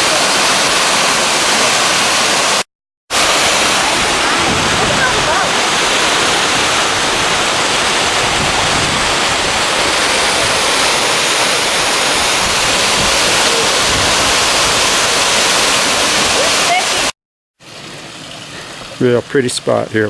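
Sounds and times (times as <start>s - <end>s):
waterfall rushing: 0.0s - 19.8s.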